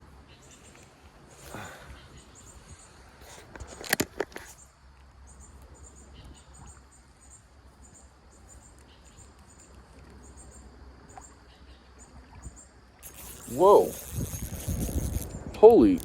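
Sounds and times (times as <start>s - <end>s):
insects chirping: 0.0s - 16.0s.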